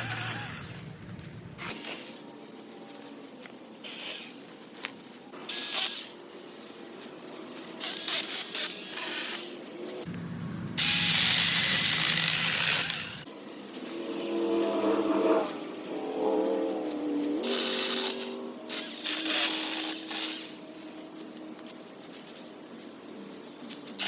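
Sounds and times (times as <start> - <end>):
chainsaw cutting branches: 0.0 - 0.9, 10.8 - 13.3, 17.4 - 20.6.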